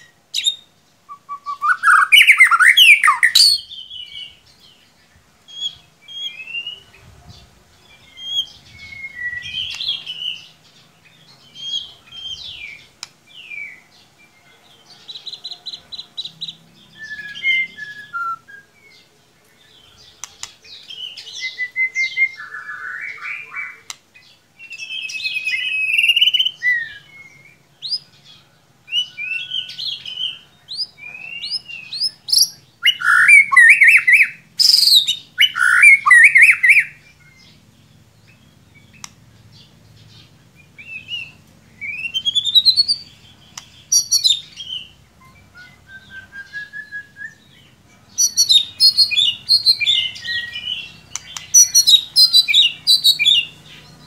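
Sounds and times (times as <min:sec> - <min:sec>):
bird singing whistles and chatter: 0:00.0 - 0:04.3, 0:05.5 - 0:10.6, 0:16.2 - 0:19.0, 0:20.1 - 0:24.0, 0:24.6 - 0:28.0, 0:28.9 - 0:37.4, 0:40.6 - 0:54.0.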